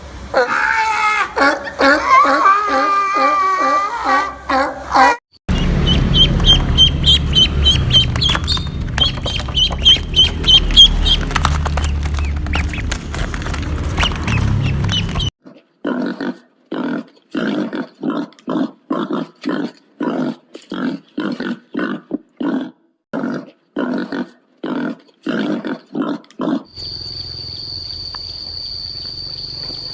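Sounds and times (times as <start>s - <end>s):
duck quacking: 4.0s - 11.3s
rapid high chirps: 5.5s - 11.3s
loud low rumble: 5.5s - 15.3s.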